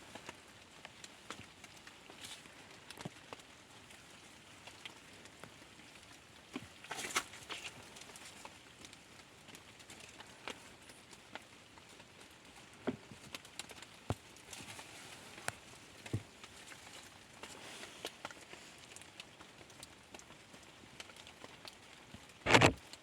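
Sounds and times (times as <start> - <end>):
light rain pattering: 0.0 - 23.0.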